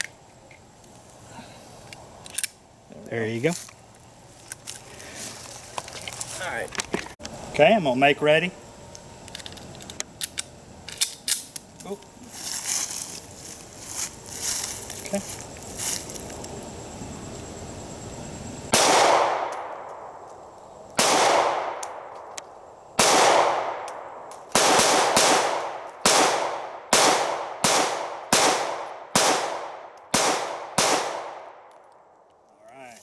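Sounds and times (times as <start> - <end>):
pistol shots ringing: 18.7 - 19.9, 21.0 - 22.1, 23.0 - 31.4.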